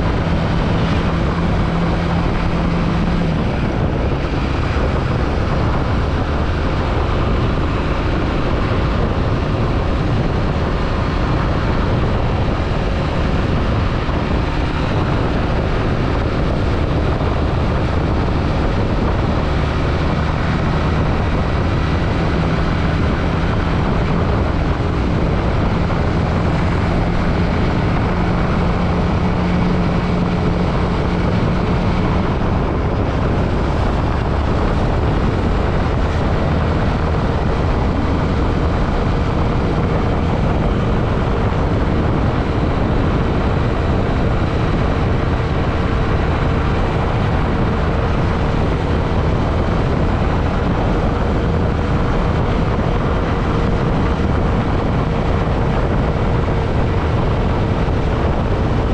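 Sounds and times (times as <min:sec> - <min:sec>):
motorcycle engine running: 0:00.0 - 0:58.9
wind rush over microphone: 0:00.0 - 0:58.9.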